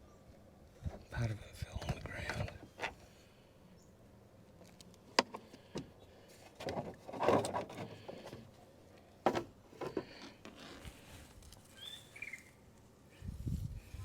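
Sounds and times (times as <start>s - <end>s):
rustling and scraping: 4.6s - 12.5s.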